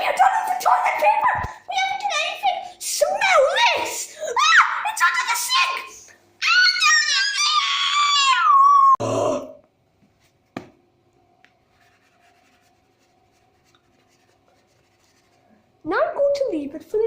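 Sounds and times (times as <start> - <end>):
faint steady hum: 0.0 - 17.0
child's high-pitched squeal: 3.4 - 5.0, 6.4 - 9.0.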